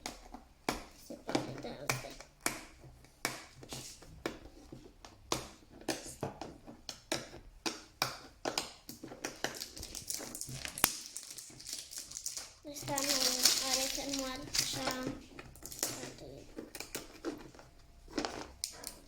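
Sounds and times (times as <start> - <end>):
plastic wrapping crinkling: 9.2 - 19.0.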